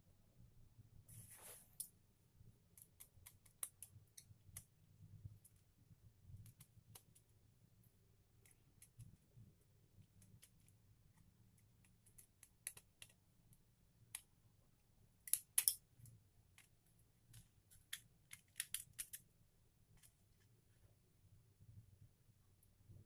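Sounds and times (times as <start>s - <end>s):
faint low hum: 0.0s - 23.0s
light clicks and snips: 6.3s - 7.4s, 8.3s - 9.4s, 10.0s - 14.3s, 15.2s - 19.3s.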